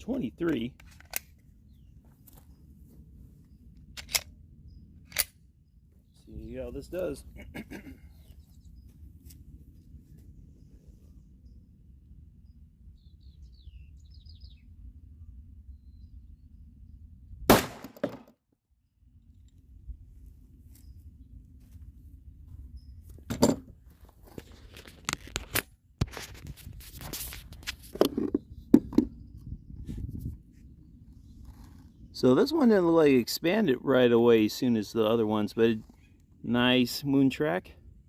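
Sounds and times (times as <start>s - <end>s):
pistol shot: 17.5s - 18.2s.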